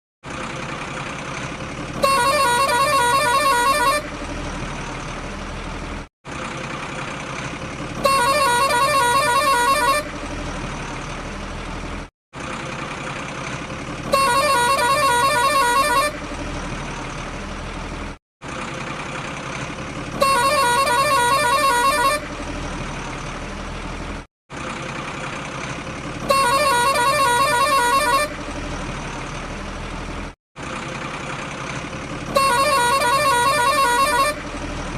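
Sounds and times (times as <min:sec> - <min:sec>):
truck engine rumble: 0:00.2 - 0:34.9
truck horn honking: 0:01.9 - 0:04.6, 0:07.9 - 0:10.5, 0:14.0 - 0:16.7, 0:20.1 - 0:23.2, 0:26.2 - 0:28.8, 0:32.1 - 0:34.9.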